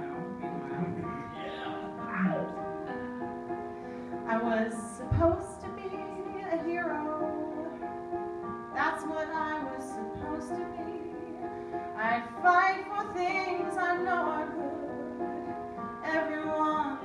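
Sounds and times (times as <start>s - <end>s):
woman singing: 4.3s - 7.9s, 8.7s - 17.0s.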